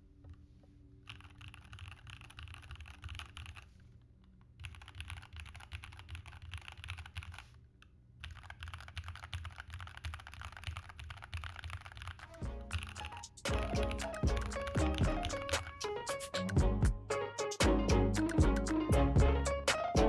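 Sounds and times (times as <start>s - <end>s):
mechanical keyboard typing: 1.0s - 3.7s, 4.6s - 7.5s, 8.2s - 16.6s.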